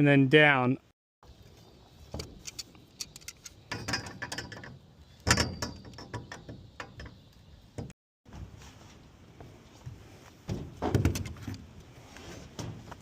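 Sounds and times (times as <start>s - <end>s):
tools and parts clicking and knocking: 2.1s - 7.9s.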